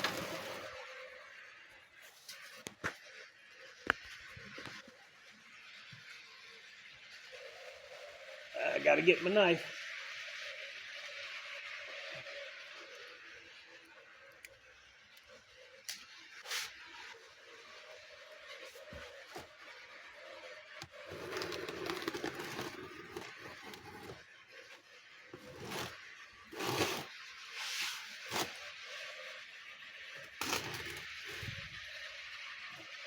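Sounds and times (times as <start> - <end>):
knife scraping packaging: 0.0 - 0.7, 20.8 - 24.2, 25.4 - 28.7, 30.3 - 31.6
packaging tearing: 21.1 - 24.2.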